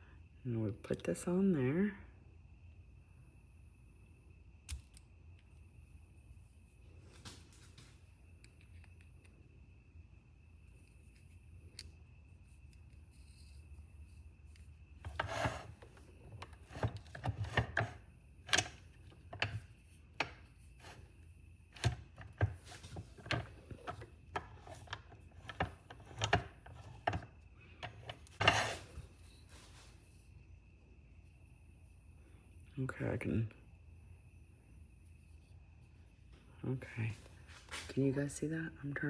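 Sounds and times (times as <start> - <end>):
pen parts clicking and knocking: 21.8 - 28.8.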